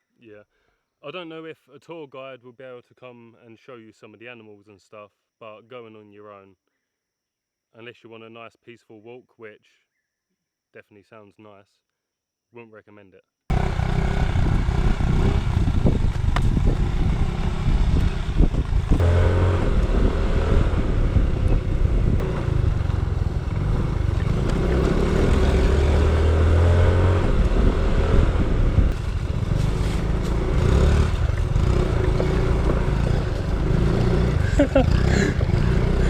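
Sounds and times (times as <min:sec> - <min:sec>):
small motorbike engine running: 0:13.5 - 0:36.0
wind rumble on microphone: 0:13.5 - 0:36.0.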